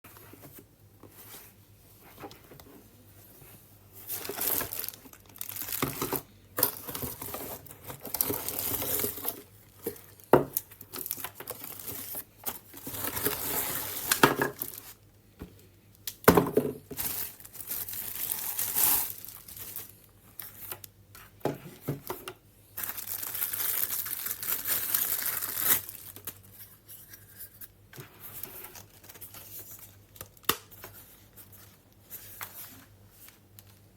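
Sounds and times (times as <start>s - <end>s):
packaging tearing and crinkling: 4.1s - 9.4s, 12.8s - 15.0s, 17.0s - 19.9s, 22.8s - 26.5s.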